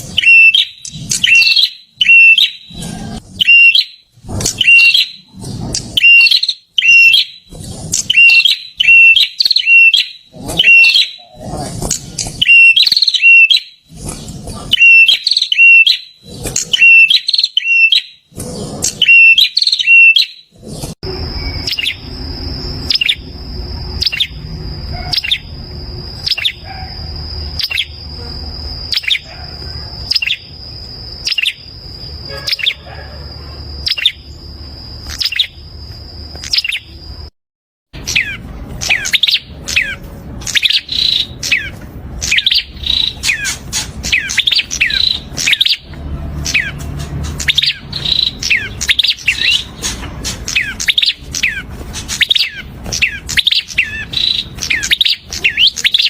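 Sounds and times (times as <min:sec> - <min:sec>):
downward-sweeping bird chirps: 0:00.0 - 0:37.3, 0:38.0 - 0:46.8, 0:47.4 - 0:56.0
bird calling short phrases: 0:08.1 - 0:11.5.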